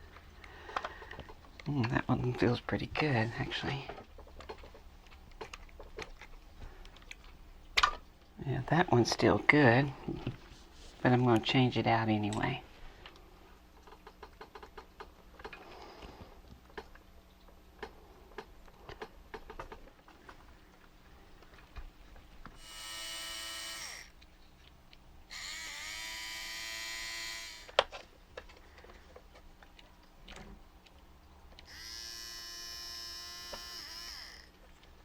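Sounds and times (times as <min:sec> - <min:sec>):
small electric motor whirring: 0:22.6 - 0:24.2, 0:25.3 - 0:27.9, 0:31.6 - 0:34.6
small parts clicking: 0:22.6 - 0:35.0.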